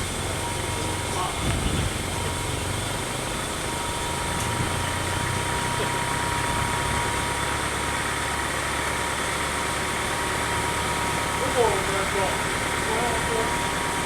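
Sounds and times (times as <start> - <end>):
engine idling: 0.0 - 14.0
thin steady whine: 0.0 - 14.0.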